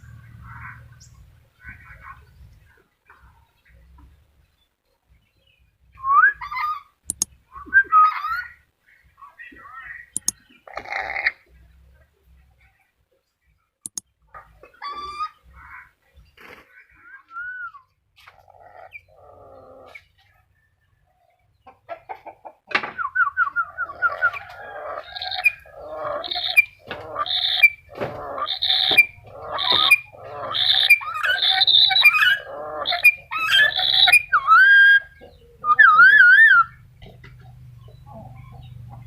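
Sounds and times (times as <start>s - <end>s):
loud harsh parrot calls: 24.8s - 36.8s
parrot trill: 28.4s - 36.7s.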